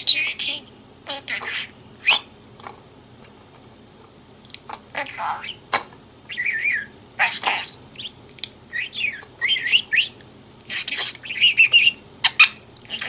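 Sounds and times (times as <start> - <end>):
budgerigar warbling and chattering: 0.0 - 2.3, 5.0 - 5.6, 6.3 - 13.0.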